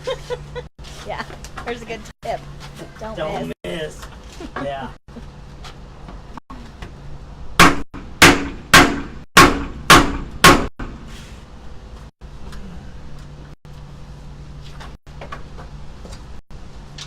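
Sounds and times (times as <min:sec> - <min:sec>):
hammer striking hard blows: 0:07.6 - 0:11.0.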